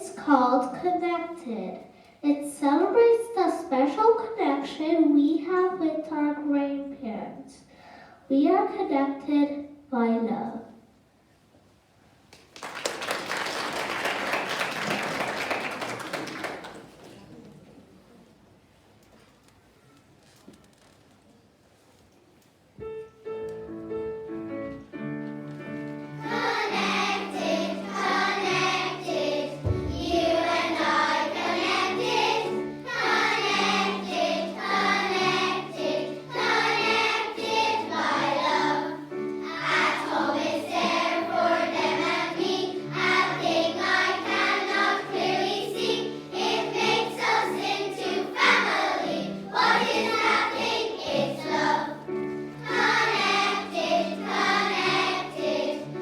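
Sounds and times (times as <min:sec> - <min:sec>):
girls choir singing: 0:26.0 - 0:56.0.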